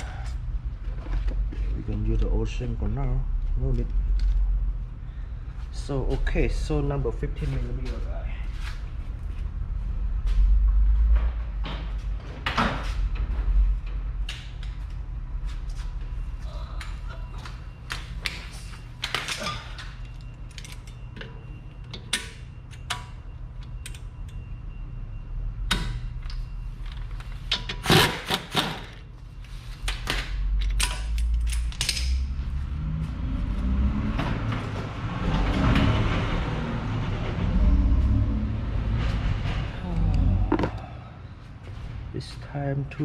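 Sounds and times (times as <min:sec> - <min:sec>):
rumbling noise: 0:32.8 - 0:41.4.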